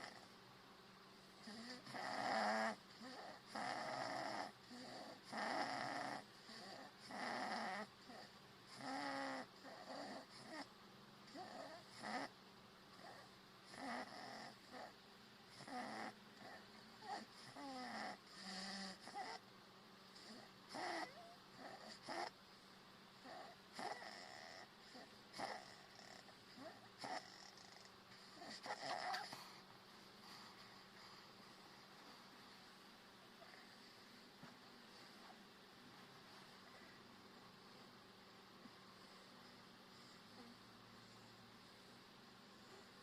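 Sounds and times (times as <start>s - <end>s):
person snoring: 1.4s - 10.6s.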